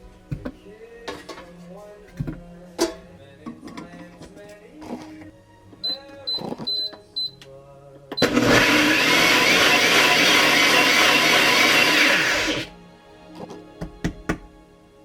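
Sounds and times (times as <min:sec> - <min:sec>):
blender running: 0:08.2 - 0:12.7.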